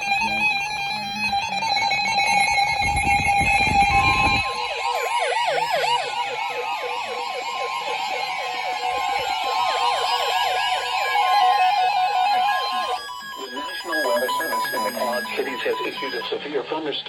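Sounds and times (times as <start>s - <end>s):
steady electronic tones: 0.0s - 16.4s
warbling siren-like alarm: 0.0s - 16.4s
steady alert tone: 11.6s - 16.3s.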